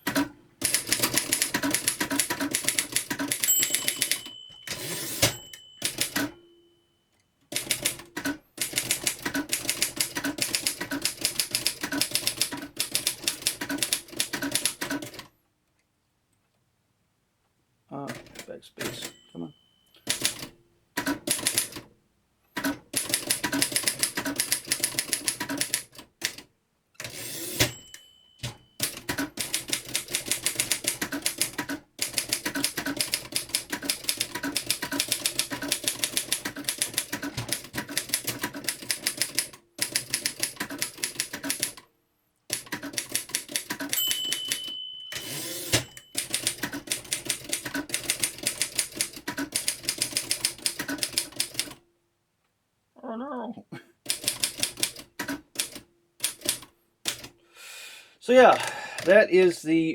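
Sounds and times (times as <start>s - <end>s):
typewriter key strikes: 0.0s - 6.4s, 22.6s - 26.4s, 27.0s - 41.8s, 42.5s - 51.7s
typewriter bell ding: 0.1s - 8.1s, 18.8s - 20.4s, 27.1s - 31.4s, 43.2s - 49.0s.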